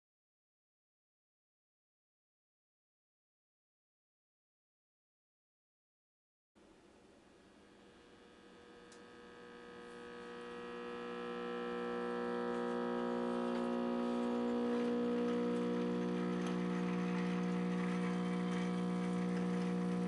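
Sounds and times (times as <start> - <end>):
tube radio humming: 7.8 - 20.0.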